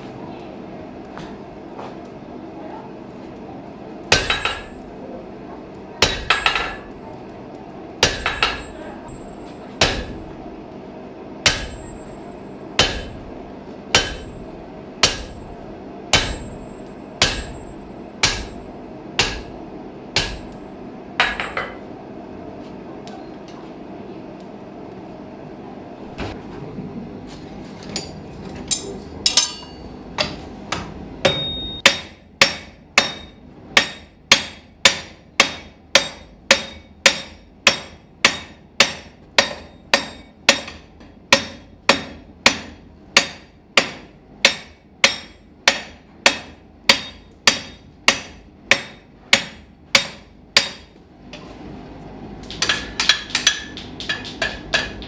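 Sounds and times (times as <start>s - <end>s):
hammer striking iron on anvil: 4.0s - 4.9s, 6.0s - 7.0s, 8.0s - 10.3s, 11.4s - 13.3s, 13.9s - 21.8s, 28.0s - 51.0s, 52.4s - 55.0s.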